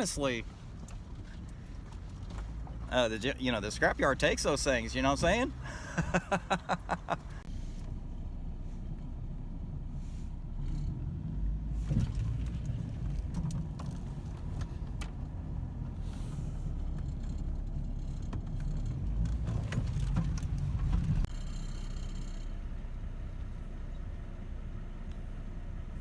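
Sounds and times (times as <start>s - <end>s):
vehicle driving low rumble: 0.0s - 26.0s
rattles and clicks: 11.8s - 22.6s.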